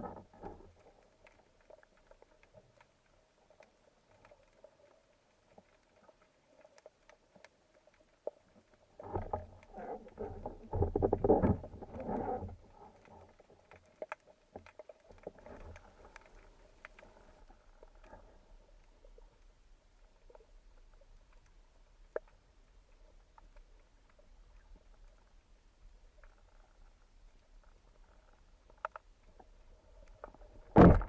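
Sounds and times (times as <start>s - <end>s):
faint crackling ticks underwater: 0.0s - 31.0s.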